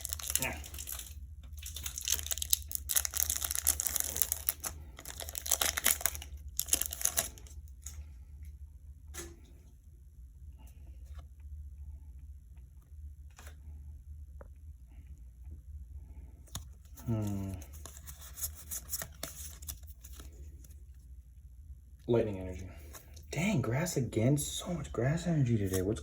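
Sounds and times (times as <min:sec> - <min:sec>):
cards being handled: 0:00.0 - 0:07.9, 0:16.5 - 0:20.8, 0:25.6 - 0:26.0
foil wrapper crinkling and tearing: 0:00.0 - 0:08.0, 0:17.0 - 0:20.4.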